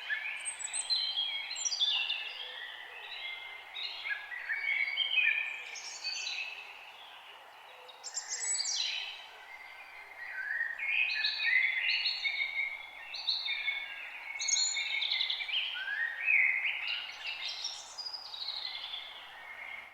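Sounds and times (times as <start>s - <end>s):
songbirds singing: 0.0s - 19.9s.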